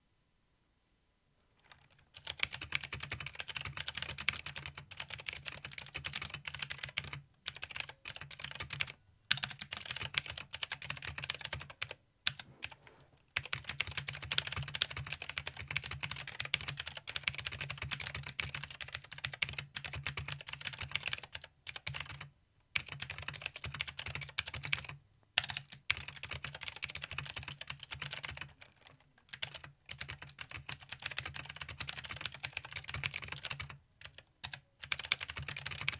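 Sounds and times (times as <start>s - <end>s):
typing on mechanical keyboard: 1.6s - 12.8s, 13.4s - 35.9s.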